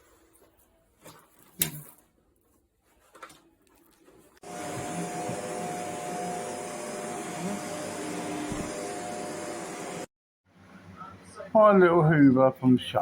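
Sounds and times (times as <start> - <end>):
vacuum cleaner motor running: 4.4 - 10.1.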